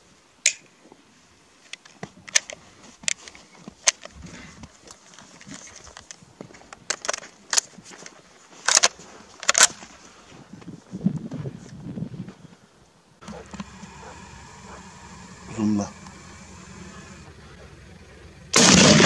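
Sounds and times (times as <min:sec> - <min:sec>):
twigs and leaves crunching underfoot: 0:01.6 - 0:11.0.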